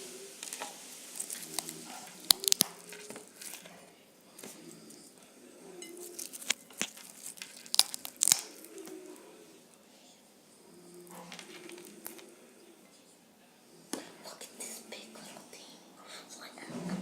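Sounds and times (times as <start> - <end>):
wet biting and chewing smacks: 1.2 - 3.7, 6.1 - 9.0.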